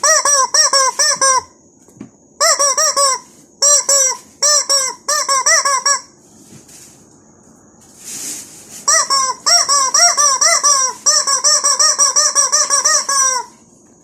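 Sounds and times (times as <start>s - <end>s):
squeaky toy squeaks: 0.0s - 1.5s, 2.4s - 6.1s, 8.8s - 13.6s.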